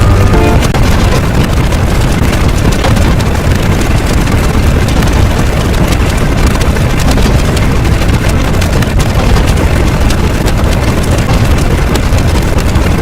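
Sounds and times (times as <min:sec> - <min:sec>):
loud wall of noise: 0:00.0 - 0:01.6
crackles: 0:00.0 - 0:13.0
deep rumble: 0:00.0 - 0:13.0.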